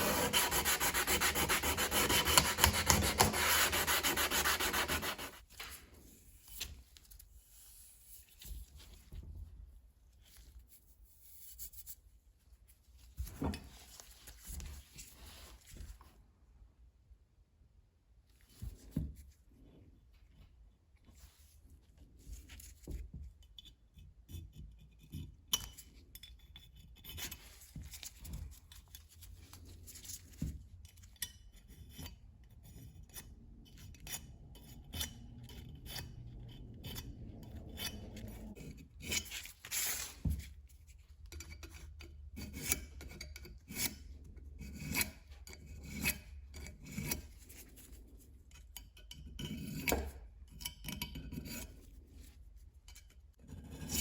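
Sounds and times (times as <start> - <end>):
hand scraping on brass: 0.0 - 5.4.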